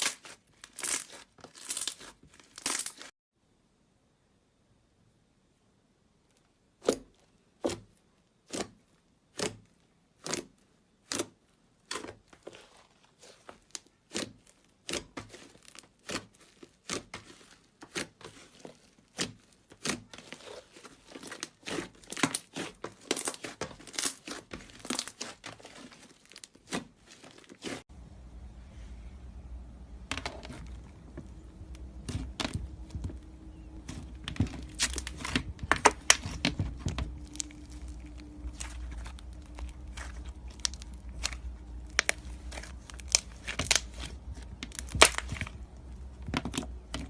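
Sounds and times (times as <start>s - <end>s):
slime popping and crackling: 0.0s - 3.1s, 11.9s - 27.8s, 33.8s - 45.8s.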